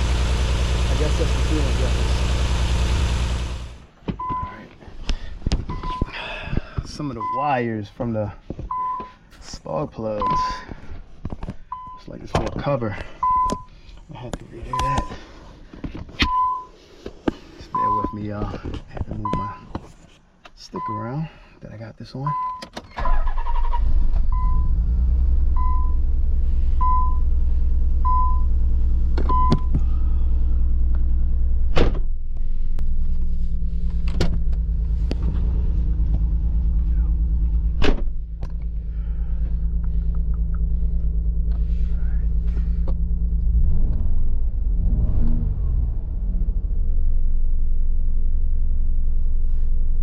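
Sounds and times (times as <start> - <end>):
car engine idling: 0.0 - 3.9, 32.4 - 43.6.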